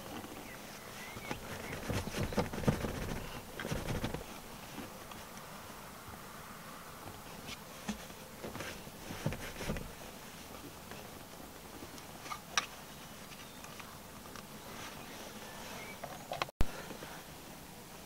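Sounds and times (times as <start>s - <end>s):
faint steady hiss: 0.0s - 18.0s.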